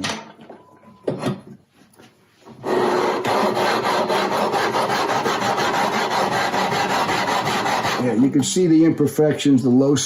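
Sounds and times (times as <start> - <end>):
sandpaper scraping on wood: 2.6 - 8.3.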